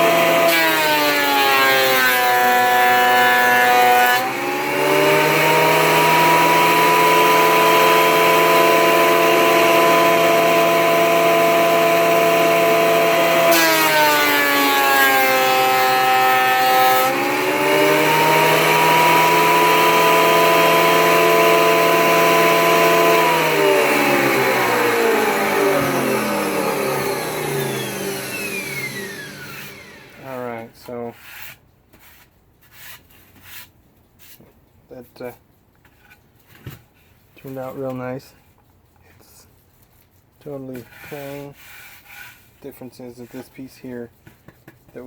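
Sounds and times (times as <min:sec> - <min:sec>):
portable planer running: 0:00.0 - 0:30.5
planer cutting board: 0:00.0 - 0:34.4, 0:40.7 - 0:42.5.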